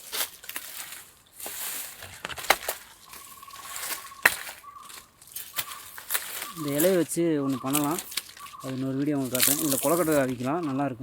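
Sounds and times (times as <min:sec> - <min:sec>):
leaves and stalks rustling: 0:00.0 - 0:11.0
sharp clicks: 0:02.2 - 0:10.8.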